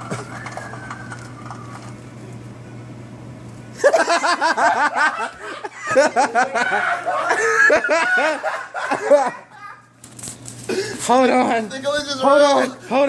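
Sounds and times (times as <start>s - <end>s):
steady low hum: 0.0s - 13.0s
high-pitched laughter: 3.8s - 9.9s.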